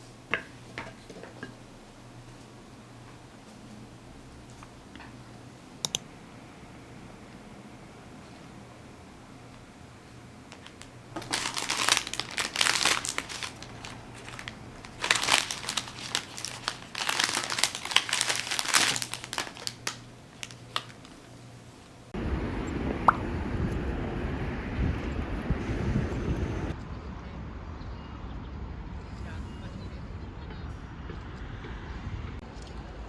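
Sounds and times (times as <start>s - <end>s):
steady outdoor rumble: 0.0s - 33.0s
crinkling and crunching: 10.5s - 21.4s.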